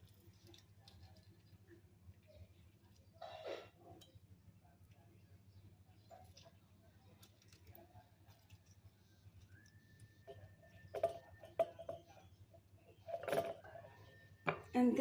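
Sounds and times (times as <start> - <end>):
thin whistle-like tone: 9.4 - 11.5.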